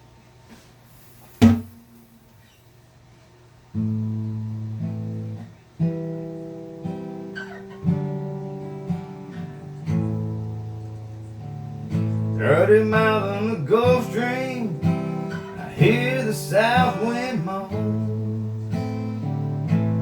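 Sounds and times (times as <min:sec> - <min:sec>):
sharp knock: 0:01.4 - 0:02.1
acoustic guitar strumming chords: 0:01.4 - 0:02.2, 0:03.8 - 0:20.0.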